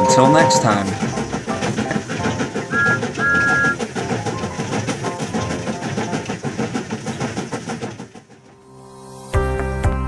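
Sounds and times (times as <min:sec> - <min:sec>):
two-tone train whistle: 0:00.0 - 0:03.8
train clickety-clack chugging: 0:00.0 - 0:09.0.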